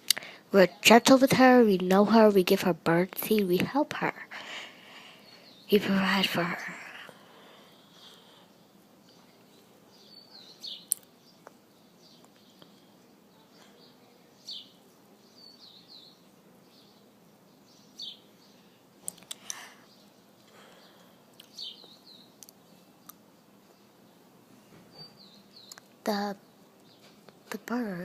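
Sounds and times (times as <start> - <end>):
small birds chirping: 0.0 - 28.0
sharp clicks: 19.0 - 19.6.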